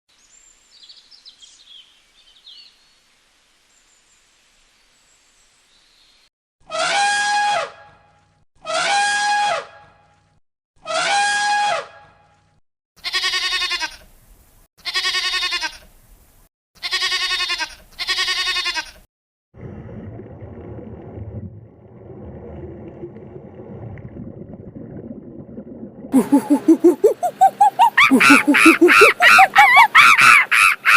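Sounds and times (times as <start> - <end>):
goat or sheep bleating: 13.0 - 14.0, 14.8 - 15.8, 16.8 - 19.1.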